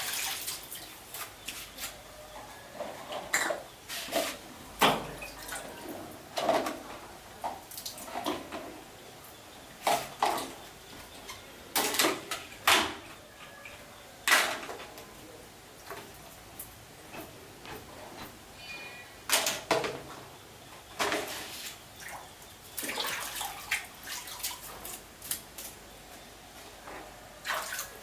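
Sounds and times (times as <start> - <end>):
objects knocking and clattering: 17.2 - 20.3.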